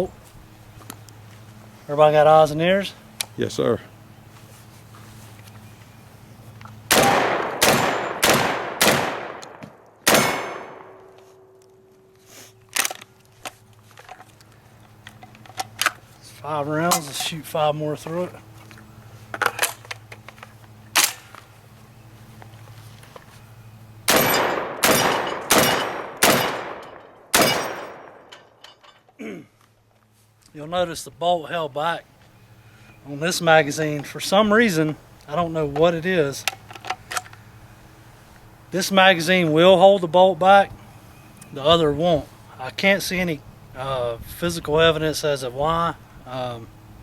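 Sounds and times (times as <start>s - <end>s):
shotgun shots with echo: 6.9s - 11.0s, 24.1s - 28.3s.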